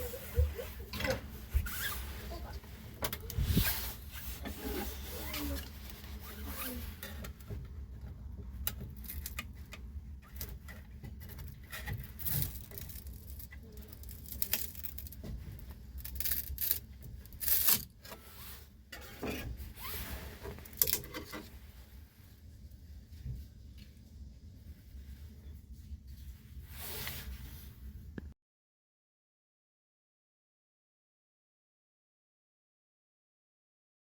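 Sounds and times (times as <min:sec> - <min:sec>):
scraping and rustling handling: 0:00.0 - 0:22.3.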